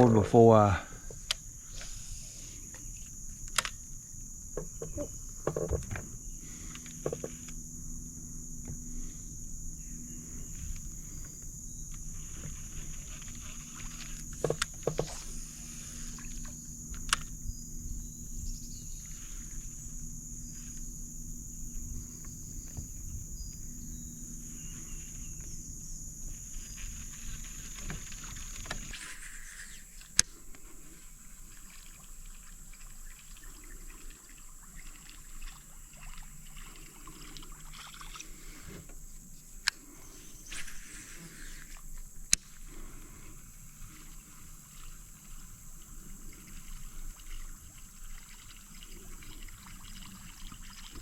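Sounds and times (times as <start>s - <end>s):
faint low hum: 0.0s - 51.0s
insects droning: 0.0s - 51.0s
gear clicking and knocking in boat: 2.7s - 29.2s.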